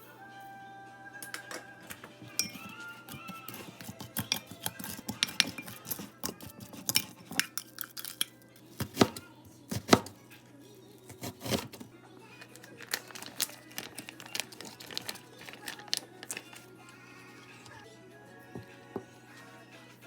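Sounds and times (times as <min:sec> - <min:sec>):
utensils and dishes clattering: 0:01.2 - 0:10.2, 0:11.0 - 0:17.8.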